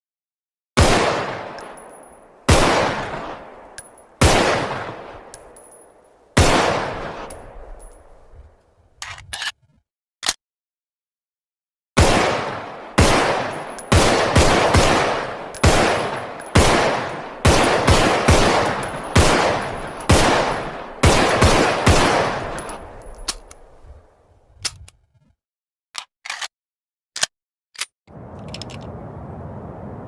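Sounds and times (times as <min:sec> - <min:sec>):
pistol shots echoing: 0:00.8 - 0:08.2, 0:12.0 - 0:23.8.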